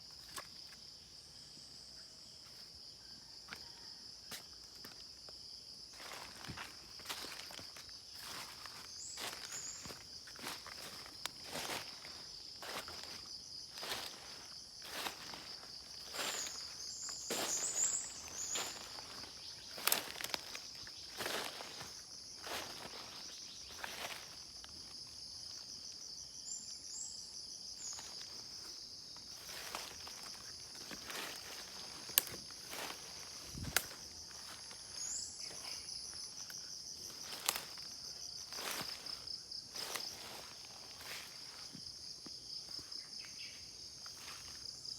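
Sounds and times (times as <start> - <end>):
insects trilling: 0.0 - 44.9
footsteps walking: 6.0 - 24.4, 29.3 - 35.8, 37.1 - 37.9, 38.5 - 41.9.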